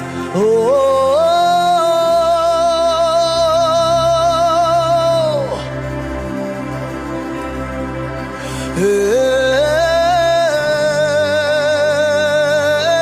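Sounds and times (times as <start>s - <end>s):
person singing wordless vocal: 0.0s - 6.8s, 8.4s - 13.0s.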